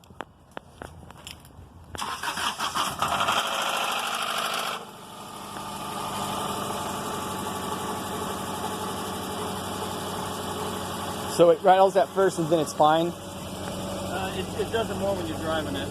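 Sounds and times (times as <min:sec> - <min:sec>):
car engine starting with rattle: 0:02.0 - 0:05.8
car engine idling: 0:02.0 - 0:15.9.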